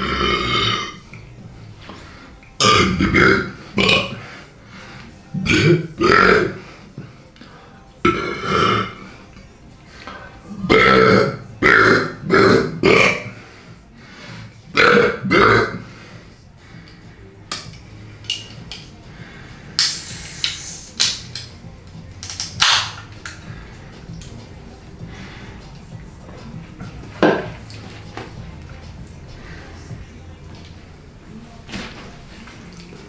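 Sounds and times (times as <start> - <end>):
loud belches: 0.0 - 1.0, 2.6 - 4.2, 5.4 - 6.6, 8.0 - 9.0, 10.6 - 13.4, 14.7 - 15.9
music: 0.0 - 33.0.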